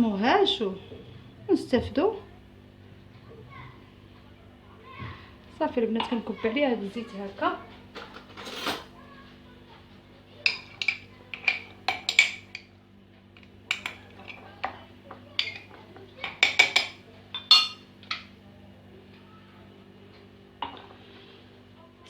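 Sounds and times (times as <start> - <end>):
utensil clinking on glass jar: 10.5 - 12.6, 13.7 - 14.4, 15.4 - 18.3.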